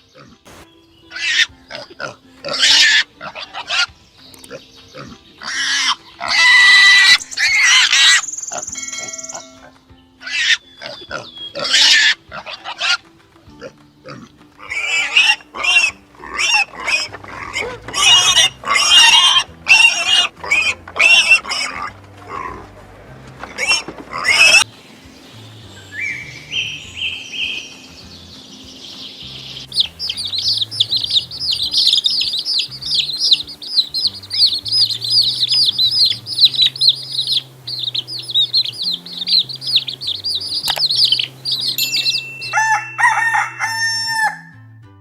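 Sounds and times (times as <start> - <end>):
pigs squealing: 1.1 - 22.8, 23.4 - 24.7, 29.7 - 41.8.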